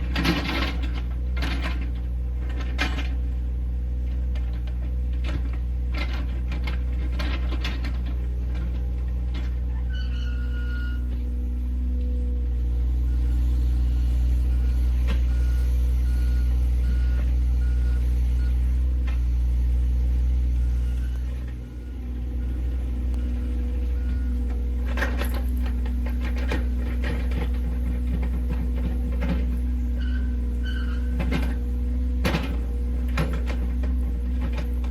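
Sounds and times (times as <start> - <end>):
heavy diesel engine running: 0.0 - 34.9
backup alarm beeping: 20.6 - 25.3.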